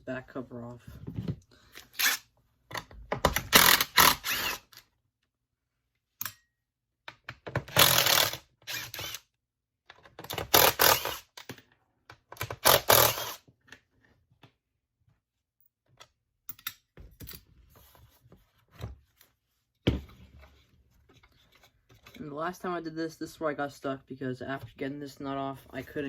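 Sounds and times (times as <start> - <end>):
impact driver rattling: 7.5 - 9.2.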